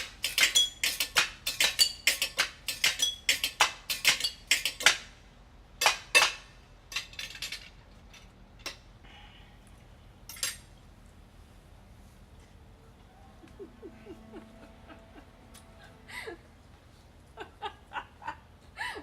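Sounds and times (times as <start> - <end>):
cutlery clinking on dishes: 0.0 - 5.0.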